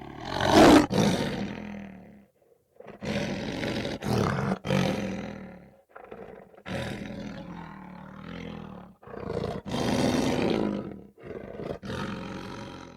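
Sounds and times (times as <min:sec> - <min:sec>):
lion roaring: 0:00.0 - 0:01.9.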